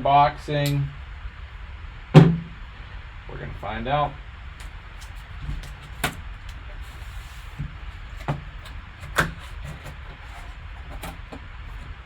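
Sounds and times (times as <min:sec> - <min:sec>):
steady low hum: 0:00.0 - 0:12.0
sharp knocks and scrapes: 0:04.6 - 0:12.0.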